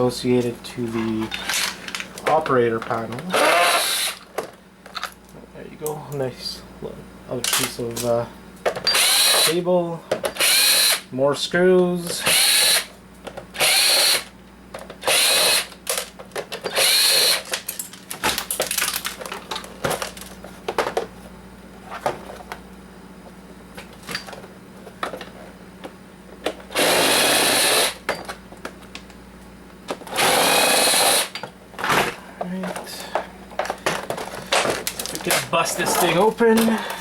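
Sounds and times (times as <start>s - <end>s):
screws and plastic rattling: 1.0s - 5.2s, 14.8s - 21.0s
cordless drill backing out screws: 8.8s - 9.5s, 16.6s - 17.5s, 30.1s - 31.4s.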